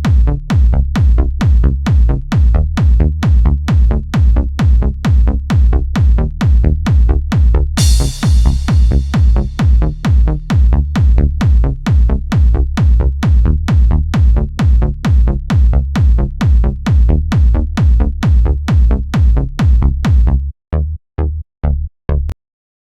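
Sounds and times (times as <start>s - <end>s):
drum machine kick drum: 0.0s - 20.4s
dance music: 7.8s - 12.1s.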